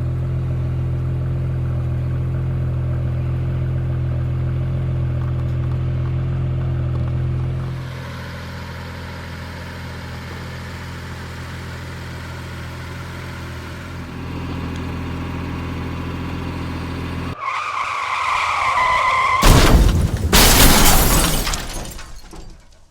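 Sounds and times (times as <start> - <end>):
car engine idling: 0.0 - 22.9
loud crashing shattering hits: 18.8 - 22.9.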